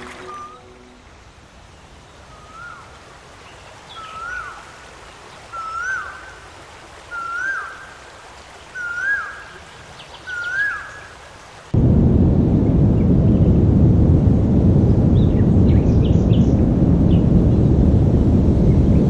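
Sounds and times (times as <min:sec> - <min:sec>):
running water hiss: 0:00.0 - 0:11.8
bird calling: 0:02.1 - 0:04.8, 0:05.4 - 0:06.4, 0:07.1 - 0:08.0, 0:08.7 - 0:11.2.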